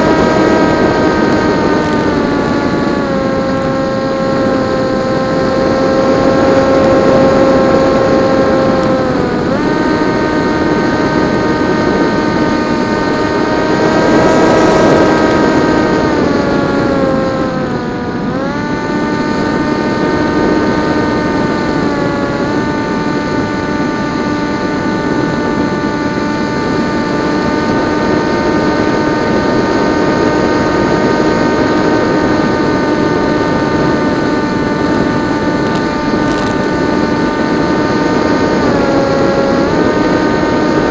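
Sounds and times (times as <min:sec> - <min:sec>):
electric motor and propeller whining: 0:00.0 - 0:40.9.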